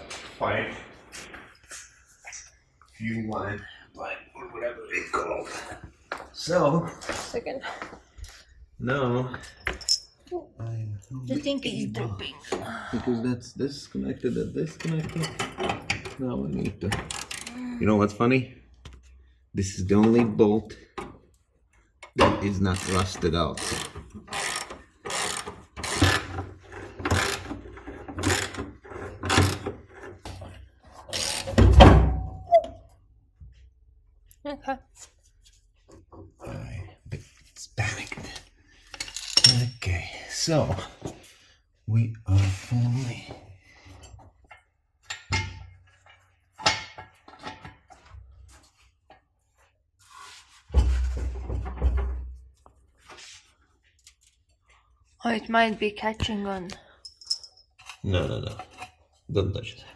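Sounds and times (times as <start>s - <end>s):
ratchet wrench clicking: 22.7s - 26.3s, 28.2s - 28.6s
fuel tank knocks and scrapes: 50.6s - 52.6s.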